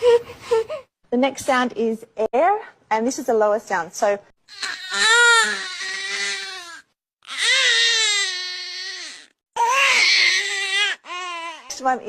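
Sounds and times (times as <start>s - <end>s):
newborn baby crying: 4.5s - 11.8s.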